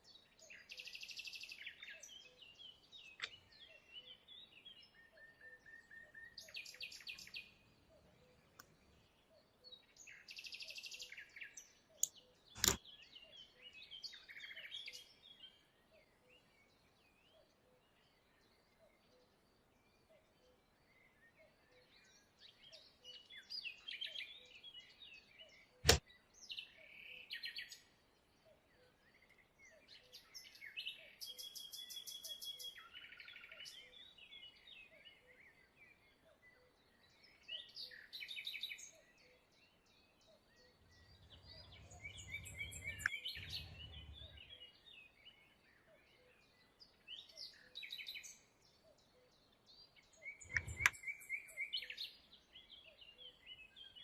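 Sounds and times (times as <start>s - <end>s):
small birds chirping and trilling: 0.0s - 54.0s
sharp click: 12.0s - 12.8s, 25.8s - 26.0s, 50.5s - 51.0s.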